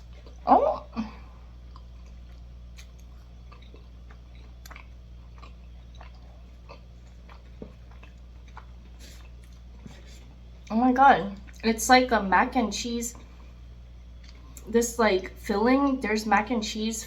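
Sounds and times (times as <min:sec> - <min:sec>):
chewing with mouth clicks: 0:00.0 - 0:00.5, 0:01.6 - 0:10.7, 0:11.3 - 0:11.7, 0:14.2 - 0:14.7
steady low hum: 0:00.0 - 0:17.0.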